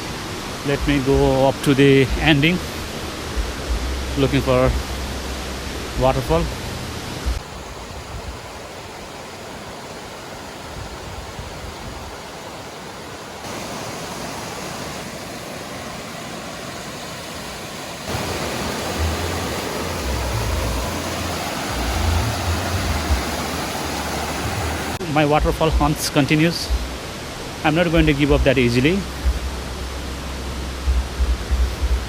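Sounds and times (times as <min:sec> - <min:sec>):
rushing river water: 0:00.0 - 0:32.0
low rumbling: 0:03.2 - 0:08.4.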